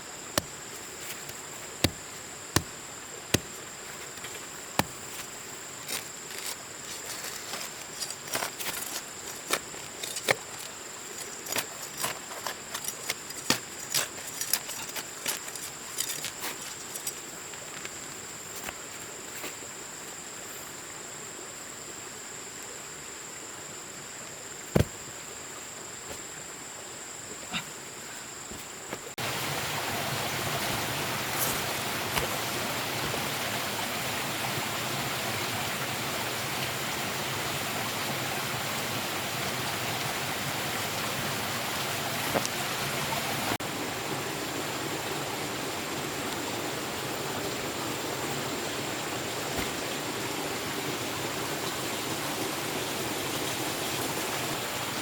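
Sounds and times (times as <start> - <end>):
flowing water rushing: 0.0 - 17.2, 29.2 - 55.0.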